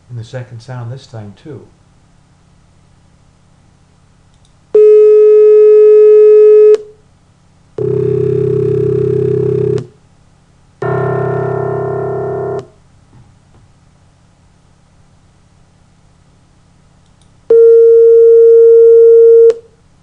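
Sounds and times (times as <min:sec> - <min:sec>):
steady pure tone: 0:07.8 - 0:12.8
low buzzy synthesized tones: 0:10.8 - 0:12.8.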